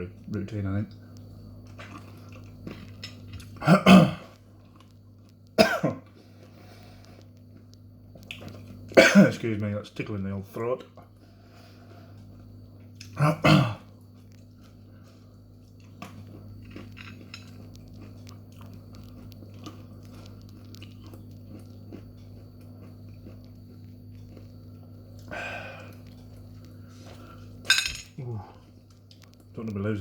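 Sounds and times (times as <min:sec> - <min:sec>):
low electrical hum: 0:00.0 - 0:30.0
person chewing crunchy snacks: 0:01.6 - 0:03.6, 0:04.2 - 0:09.0, 0:12.1 - 0:27.6.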